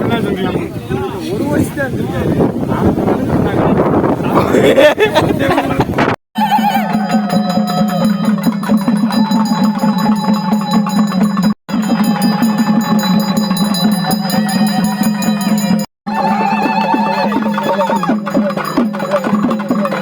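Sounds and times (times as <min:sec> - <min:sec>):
fast drumming: 0:06.4 - 0:20.0
wavering melody: 0:06.4 - 0:20.0.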